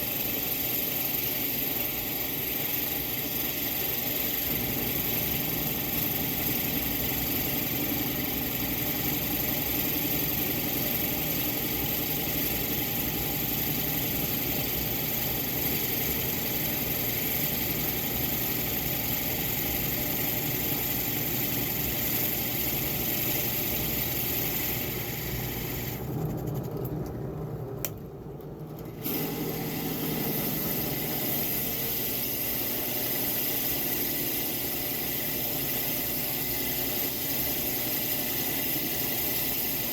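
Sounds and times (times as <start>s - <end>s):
electric motor whirring: 29.0s - 39.9s.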